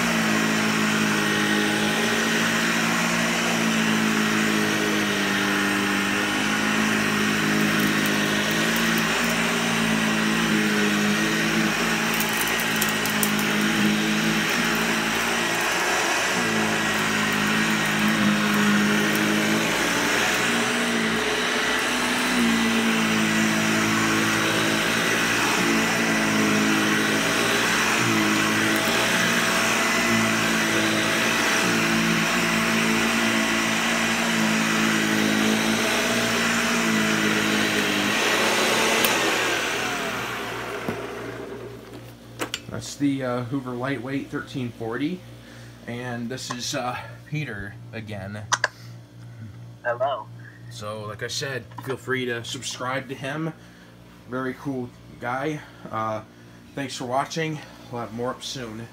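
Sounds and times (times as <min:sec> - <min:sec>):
vacuum cleaner motor running: 0:00.0 - 0:45.3.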